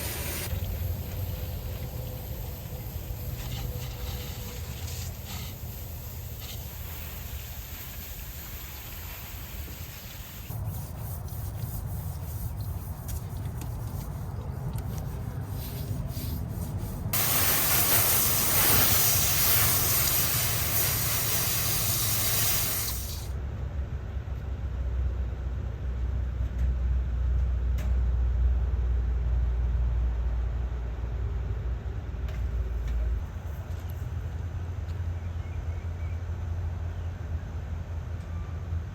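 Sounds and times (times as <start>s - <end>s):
liquid spray hissing: 0.0s - 11.6s, 14.9s - 23.3s
low hum and rumble: 0.0s - 38.9s.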